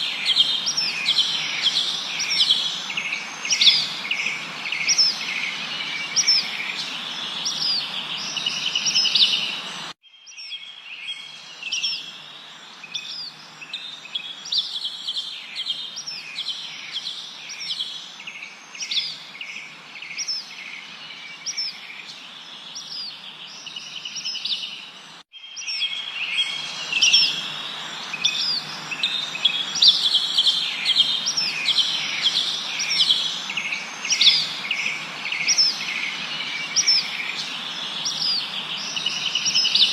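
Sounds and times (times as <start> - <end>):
background hiss: 0.0 - 10.0, 25.8 - 39.9
small birds chirping: 0.0 - 39.9.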